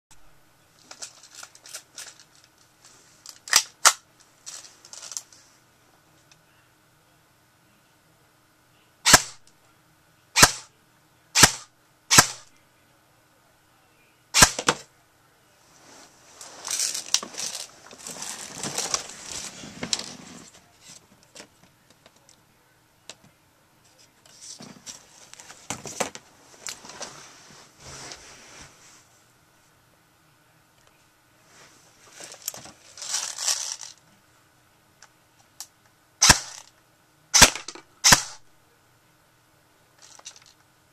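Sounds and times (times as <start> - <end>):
rustling and crackling: 0.7 - 3.6, 4.2 - 5.6, 15.6 - 22.4, 23.8 - 29.2, 31.4 - 34.0
airsoft gun shots: 9.1 - 9.4, 10.4 - 10.7, 11.4 - 12.4, 14.4 - 14.8, 36.2 - 36.6, 37.4 - 38.4.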